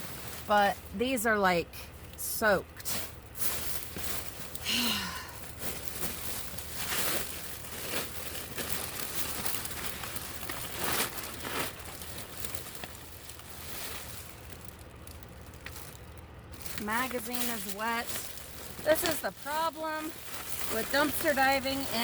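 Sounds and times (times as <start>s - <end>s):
plastic bag crinkling: 0.0s - 1.1s, 2.8s - 22.0s
paper rustling: 5.5s - 16.0s, 16.6s - 22.0s.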